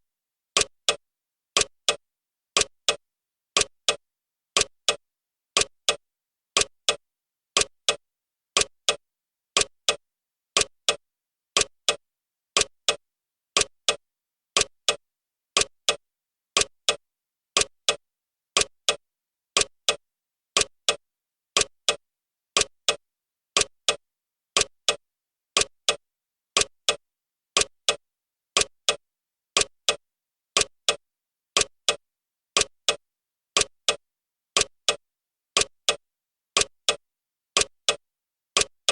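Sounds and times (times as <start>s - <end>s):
clock ticking: 0.6s - 1.0s, 1.6s - 2.0s, 2.6s - 3.0s, 3.6s - 4.0s, 4.6s - 5.0s, 5.6s - 6.0s, 6.6s - 7.0s, 7.6s - 8.0s, 8.6s - 9.0s, 9.6s - 10.0s, 10.6s - 11.0s, 11.6s - 12.0s, 12.6s - 13.0s, 13.6s - 14.0s, 14.6s - 15.0s, 15.6s - 16.0s, 16.6s - 17.0s, 17.6s - 18.0s, 18.6s - 19.0s, 19.6s - 20.0s, 20.6s - 21.0s, 21.6s - 22.0s, 22.6s - 23.0s, 23.6s - 24.0s, 24.6s - 25.0s, 25.6s - 26.0s, 26.6s - 27.0s, 27.6s - 28.0s, 28.6s - 29.0s, 29.6s - 30.0s, 30.6s - 31.0s, 31.6s - 32.0s, 32.6s - 33.0s, 33.6s - 34.0s, 34.6s - 35.0s, 35.6s - 36.0s, 36.6s - 37.0s, 37.6s - 38.0s, 38.6s - 38.9s.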